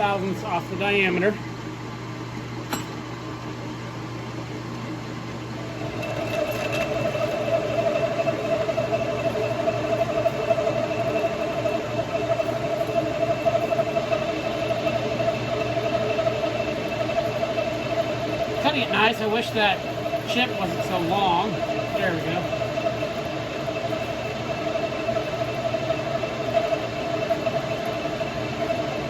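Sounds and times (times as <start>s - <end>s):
metal lathe humming: 4.3s - 29.0s
cutting tool turning steel: 5.8s - 29.0s.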